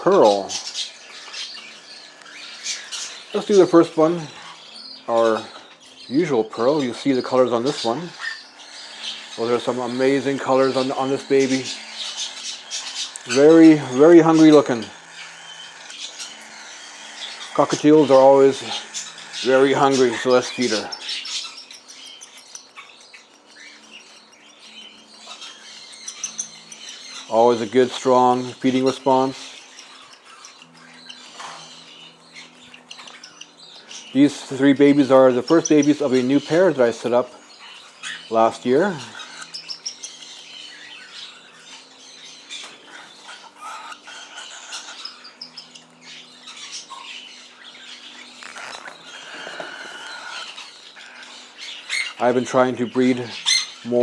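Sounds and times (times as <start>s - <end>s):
chicks squawking and chirping: 0.0s - 54.0s.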